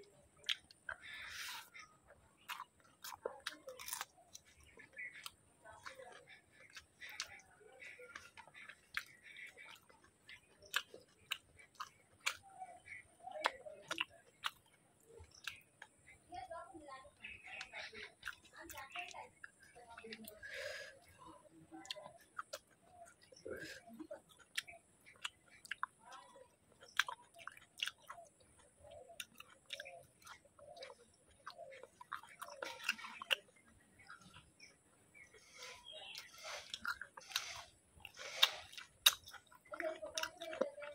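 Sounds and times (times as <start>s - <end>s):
wet smacks and lip clicks: 0.0s - 16.0s, 21.0s - 40.9s
person chewing food: 0.0s - 16.6s, 17.2s - 40.9s
sharp mouth smacking clicks: 35.6s - 39.5s.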